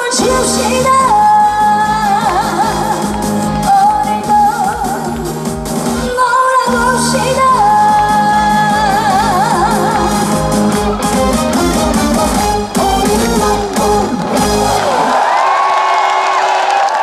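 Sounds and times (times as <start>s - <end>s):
woman singing with vibrato: 0.0s - 11.0s
band accompaniment with steady beat: 0.0s - 15.1s.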